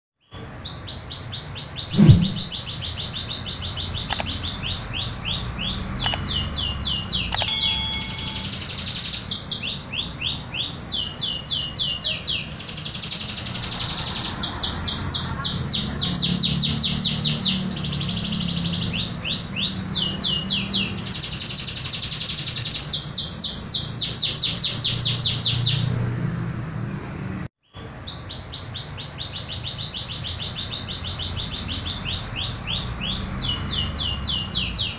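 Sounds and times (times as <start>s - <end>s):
canary singing: 0.6s - 14.0s.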